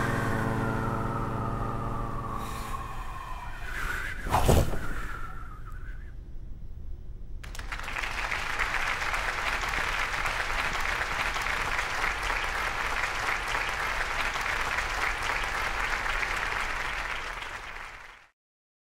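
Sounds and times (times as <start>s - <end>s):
crowd applauding: 7.4s - 18.3s.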